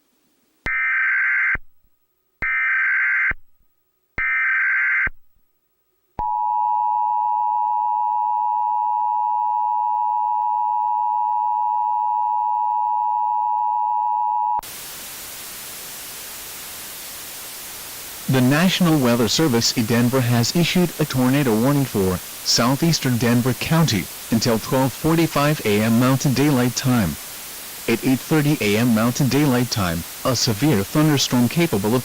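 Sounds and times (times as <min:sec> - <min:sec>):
static hiss: 0:00.0 - 0:00.6, 0:14.6 - 0:32.0.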